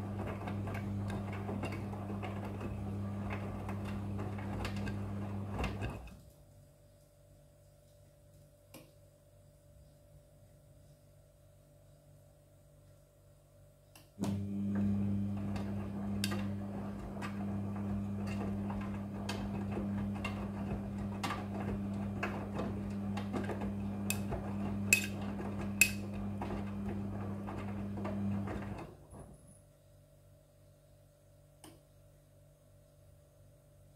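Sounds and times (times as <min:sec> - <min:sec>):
washing machine motor hum: 0:00.0 - 0:06.2, 0:14.2 - 0:29.4
tumbling load clicks and knocks: 0:00.1 - 0:06.1, 0:14.8 - 0:28.9.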